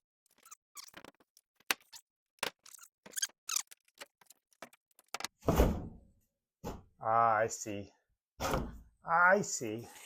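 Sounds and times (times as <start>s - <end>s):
squeaky rub: 0.2s - 5.1s
door clicks taps and scrapes: 0.3s - 5.6s.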